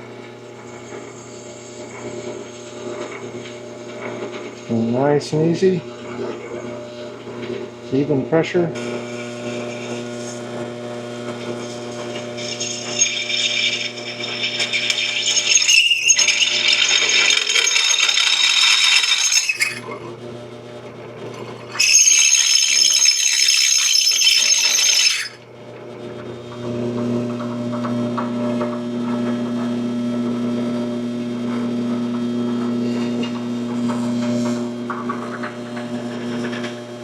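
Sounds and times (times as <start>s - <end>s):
drill press motor running: 0.0s - 37.0s
drill bit screeching in steel: 12.1s - 19.9s, 21.7s - 25.4s.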